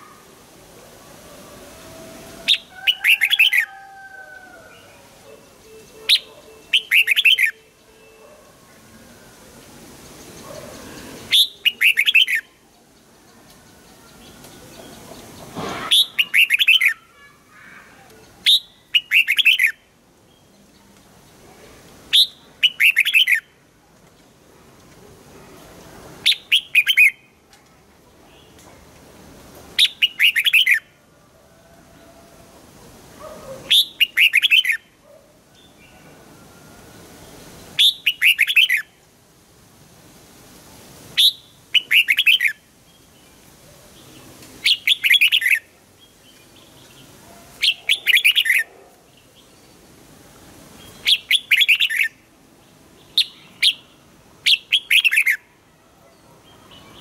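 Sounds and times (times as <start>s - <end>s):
bulbul singing: 5.4s - 8.2s.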